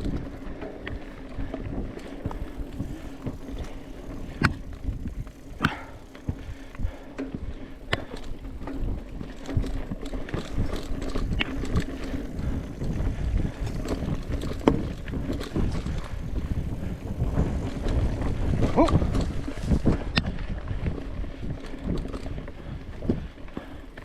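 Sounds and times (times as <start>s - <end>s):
bike knocks and rattles: 0.0s - 24.0s
bike tyres rumbling on dirt: 0.0s - 24.0s.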